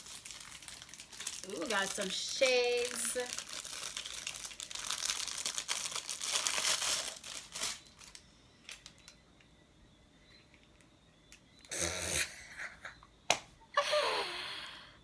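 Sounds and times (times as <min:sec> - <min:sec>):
packaging crinkling and rustling: 0:00.0 - 0:09.2.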